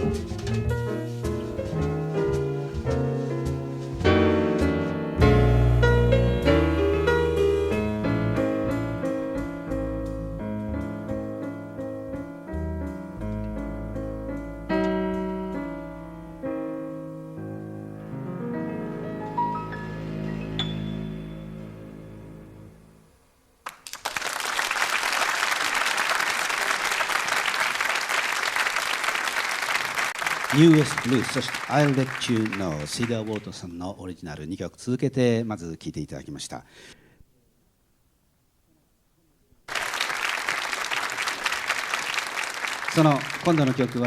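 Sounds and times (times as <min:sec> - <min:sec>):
jazz piano trio: 0:00.0 - 0:22.8
audience applauding: 0:23.6 - 0:33.6, 0:39.7 - 0:44.0.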